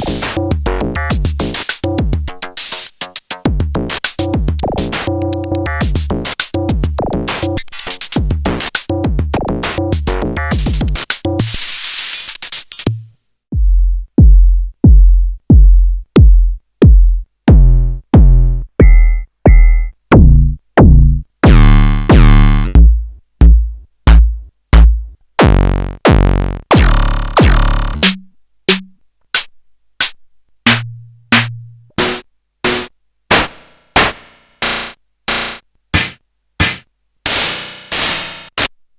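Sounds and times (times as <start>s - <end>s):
electronic percussion pattern: 0.0s - 2.4s, 3.3s - 7.5s, 18.2s - 19.9s
single electronic drum hits: 18.8s - 20.3s.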